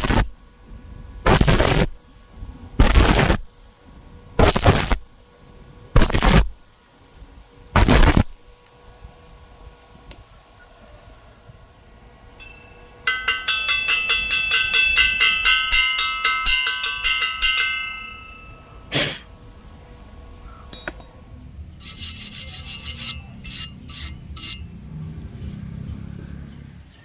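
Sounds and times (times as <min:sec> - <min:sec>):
hammer striking steel: 0:12.4 - 0:19.0, 0:20.7 - 0:24.7.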